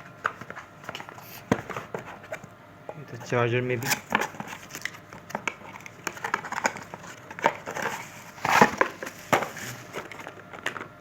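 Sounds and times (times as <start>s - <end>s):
packaging rustling and crinkling: 3.8s - 10.8s.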